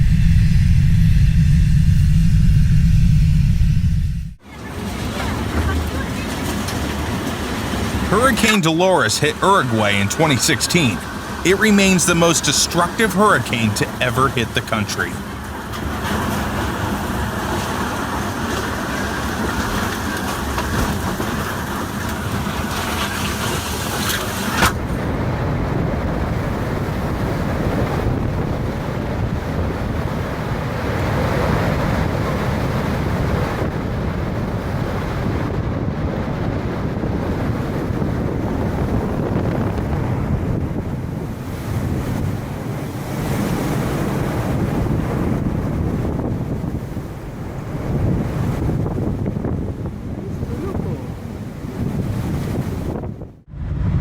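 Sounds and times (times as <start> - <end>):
strong wind buffeting microphone: 33.1 - 54.0.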